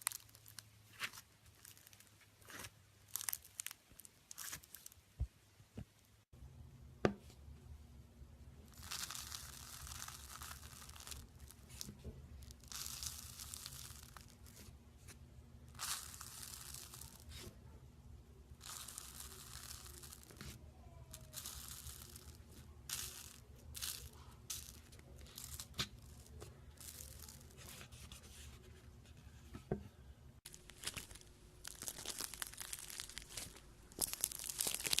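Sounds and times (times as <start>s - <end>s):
slime crackling and tearing: 0.0s - 5.0s, 8.7s - 11.9s, 12.5s - 14.6s, 15.8s - 17.4s, 18.6s - 20.5s, 30.5s - 35.0s.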